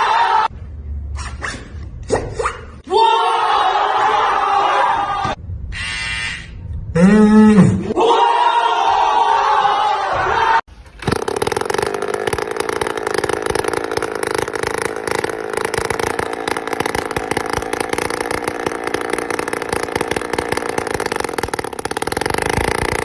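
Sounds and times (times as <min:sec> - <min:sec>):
small motor buzzing: 0:11.0 - 0:23.0.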